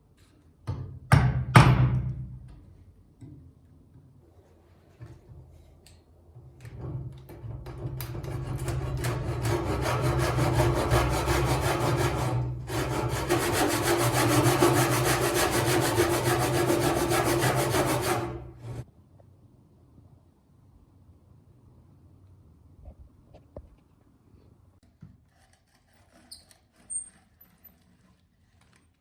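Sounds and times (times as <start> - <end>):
hand tool working wood: 7.7 - 18.8.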